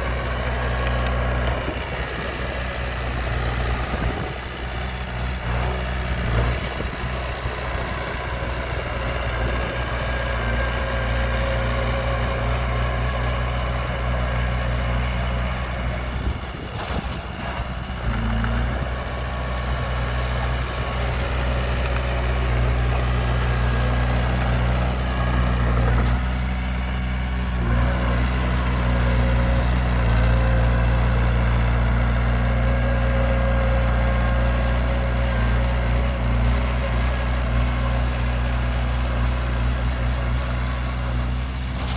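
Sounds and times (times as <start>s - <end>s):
heavy diesel engine running: 0.0s - 41.9s.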